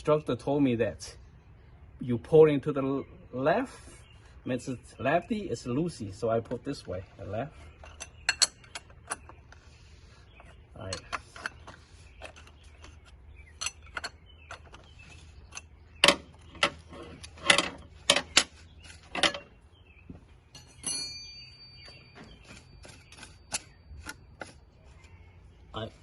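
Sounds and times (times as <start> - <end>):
short metallic ring: 20.5 - 23.8.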